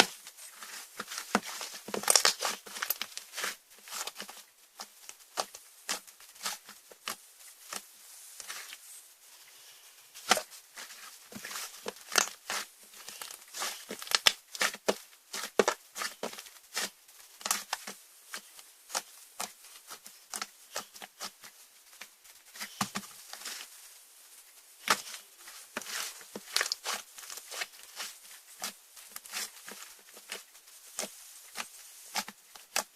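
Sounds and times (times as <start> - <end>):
slime squished by hand: 0.7 - 7.8.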